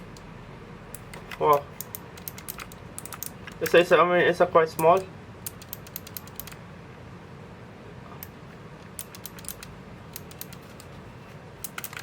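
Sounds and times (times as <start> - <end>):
keyboard switches clicking: 0.9 - 3.8, 4.8 - 6.6, 8.2 - 11.0, 11.6 - 12.0.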